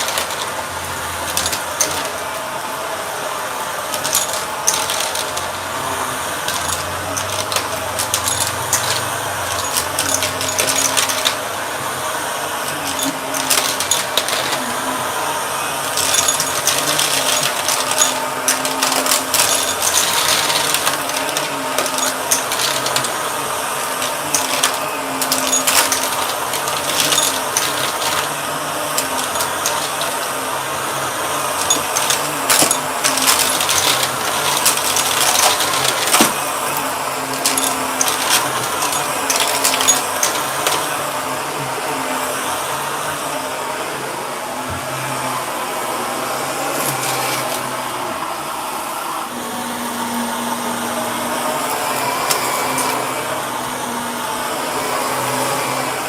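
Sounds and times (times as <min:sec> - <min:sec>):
debris clicks and rattles: 0:00.0 - 0:02.3, 0:03.9 - 0:05.8, 0:06.4 - 0:11.5, 0:12.7 - 0:14.7, 0:15.9 - 0:30.4, 0:31.4 - 0:41.1
vacuum cleaner running: 0:00.0 - 0:56.0.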